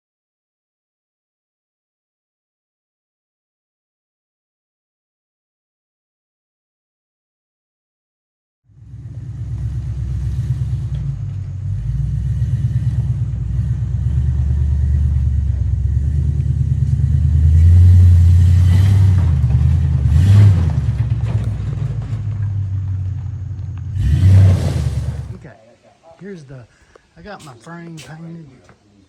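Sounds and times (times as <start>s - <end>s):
motor pulsing rumble: 8.7s - 25.4s.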